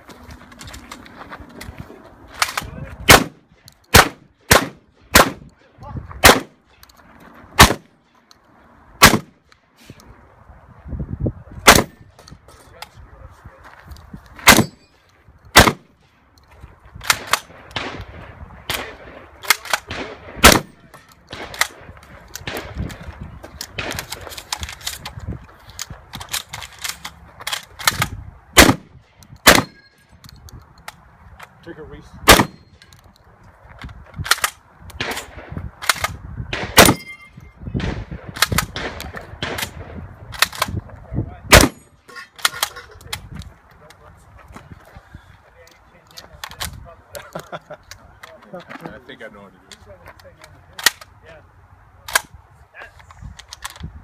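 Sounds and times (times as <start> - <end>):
shotgun shots: 3.0 - 5.5, 6.2 - 6.6, 7.6 - 7.9, 9.0 - 9.4, 11.6 - 12.1, 14.4 - 14.8, 15.5 - 16.0, 17.0 - 22.8, 27.8 - 29.9, 32.2 - 32.7, 34.3 - 37.2, 37.8 - 40.7, 41.5 - 41.9.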